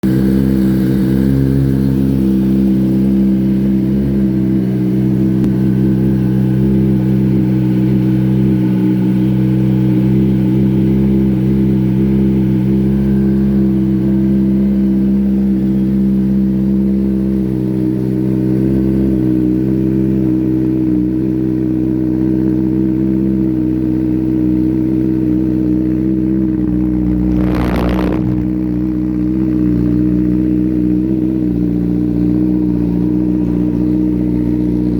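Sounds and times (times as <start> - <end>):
motorcycle engine idling: 0.1 - 34.9.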